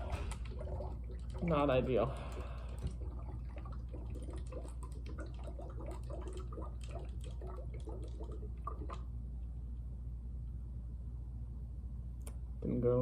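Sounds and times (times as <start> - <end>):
water gurgling and dripping: 0.0 - 9.2.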